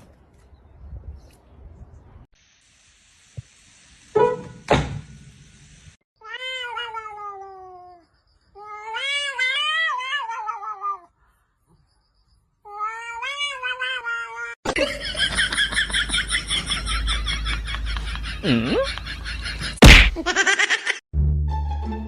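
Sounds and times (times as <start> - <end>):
cat yowling meows: 6.2 - 8.0, 8.6 - 11.1, 12.7 - 14.6.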